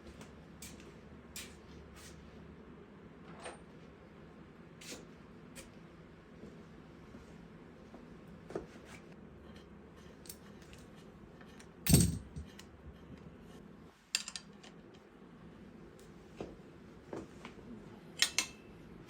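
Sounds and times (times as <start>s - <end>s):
metallic clicks of tools: 18.2s - 18.6s.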